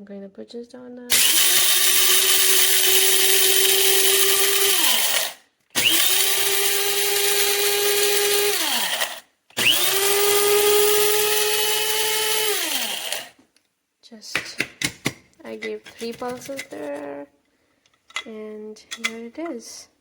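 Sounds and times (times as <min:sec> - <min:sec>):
electric coffee grinder whining: 0:01.1 - 0:13.4.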